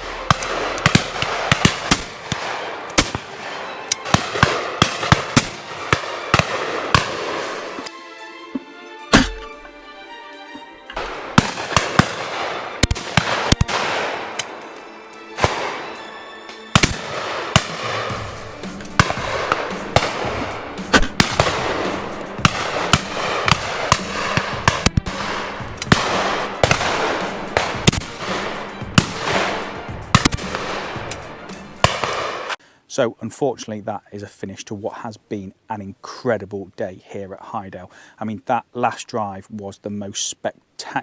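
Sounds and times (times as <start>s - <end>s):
shotgun shots: 0.0s - 7.9s, 9.1s - 9.6s, 11.0s - 14.8s, 15.4s - 16.1s, 16.8s - 32.6s
music playing: 0.0s - 32.6s.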